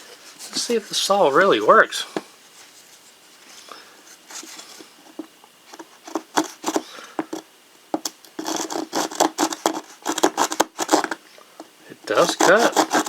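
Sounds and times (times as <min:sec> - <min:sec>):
hand saw rasping through wood: 0:08.4 - 0:11.2, 0:12.1 - 0:13.0.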